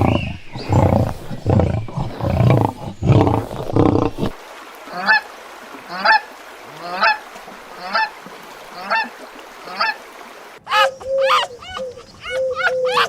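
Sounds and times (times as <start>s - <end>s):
animal call: 0.0s - 5.3s, 10.6s - 13.0s
waterfowl honking: 4.8s - 13.0s.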